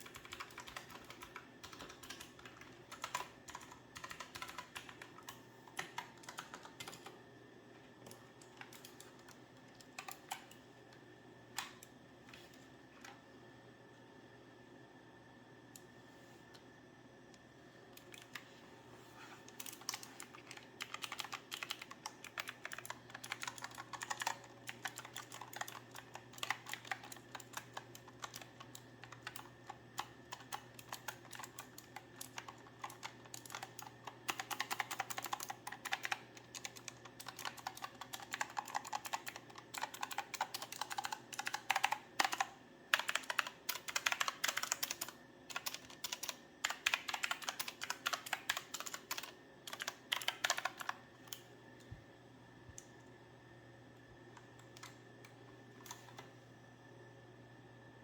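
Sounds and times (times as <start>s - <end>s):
mechanical keyboard typing: 0.0s - 7.2s, 8.0s - 10.6s, 19.5s - 51.5s, 54.4s - 56.3s.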